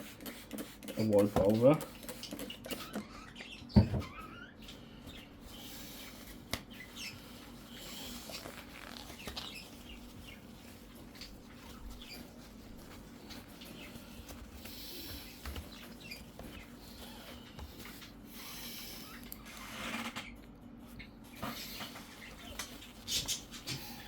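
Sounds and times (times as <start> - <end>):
tissue rubbing on screen: 5.3 - 19.0, 21.6 - 24.0.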